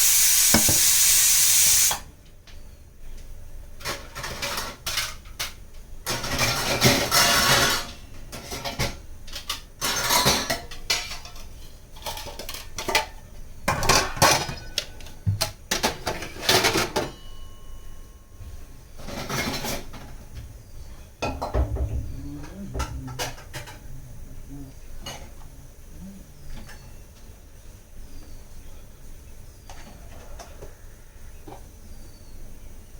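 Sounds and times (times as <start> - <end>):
pots and dishes clattering: 3.8 - 17.5, 19.0 - 20.1, 21.2 - 23.8.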